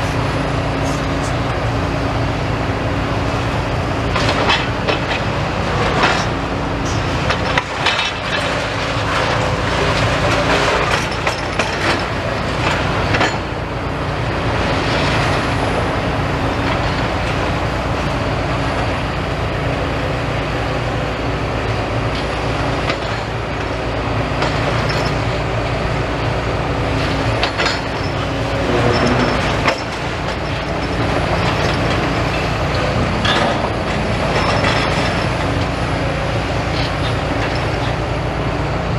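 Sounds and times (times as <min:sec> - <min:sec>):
excavator diesel engine running: 0:00.0 - 0:38.9
crunching and metallic clanking: 0:27.0 - 0:38.3.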